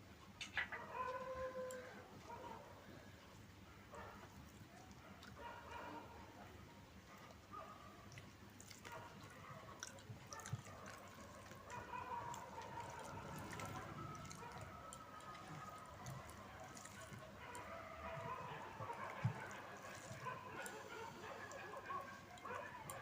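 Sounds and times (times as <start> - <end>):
chewing: 4.2 - 6.1, 7.0 - 23.0.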